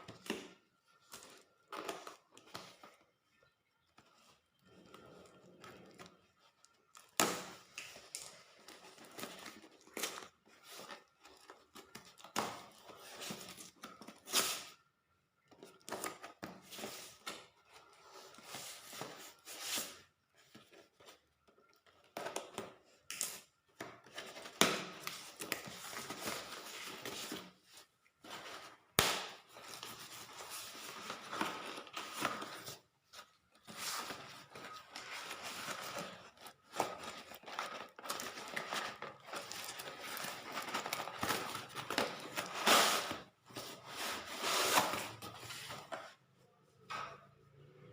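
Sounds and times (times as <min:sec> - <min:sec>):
packaging tearing and rustling: 0:33.6 - 0:45.5.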